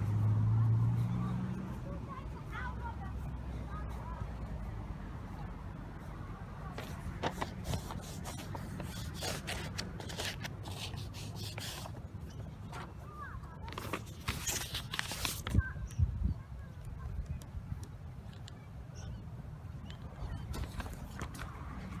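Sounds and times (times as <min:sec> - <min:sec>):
rubbing and scraping: 0:06.7 - 0:13.0, 0:13.6 - 0:15.6
wind rumble on microphone: 0:15.4 - 0:18.3.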